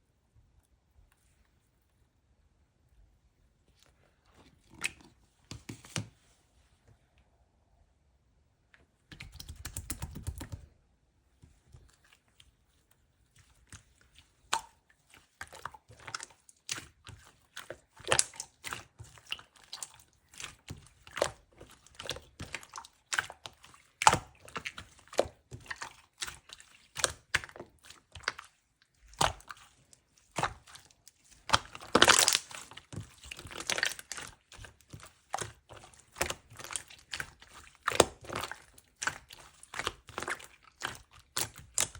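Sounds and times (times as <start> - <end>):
slime crackling and popping: 31.4 - 34.8.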